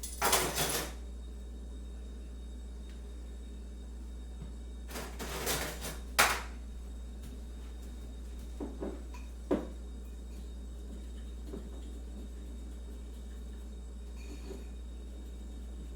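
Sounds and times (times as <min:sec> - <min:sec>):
steady low hum: 0:00.0 - 0:15.9
kitchenware scraping clatter: 0:04.9 - 0:06.5.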